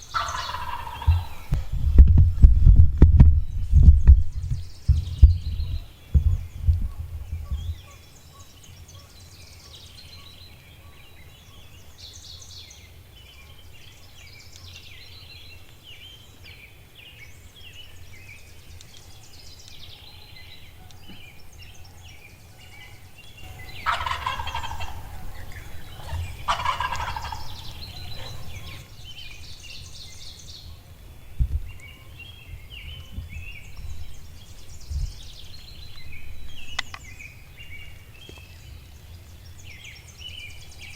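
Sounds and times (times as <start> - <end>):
songbirds singing: 0.0 - 40.9
turkey gobbling: 0.1 - 1.5, 23.5 - 28.9
dull low thumps: 1.0 - 7.8, 31.3 - 31.8.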